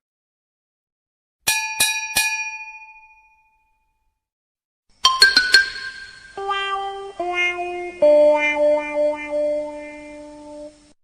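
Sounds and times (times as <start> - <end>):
bell-like chime ringing: 5.0 - 6.4
sparkly clicks and chime tones: 5.1 - 6.4.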